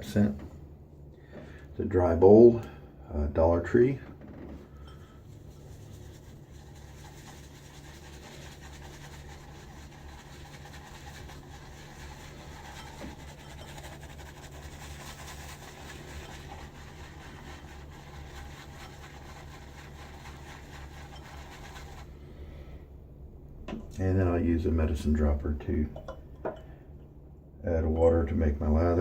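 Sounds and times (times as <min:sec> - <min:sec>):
low electrical hum: 0:00.0 - 0:29.0
shaving brush swishing in bowl: 0:05.2 - 0:22.2.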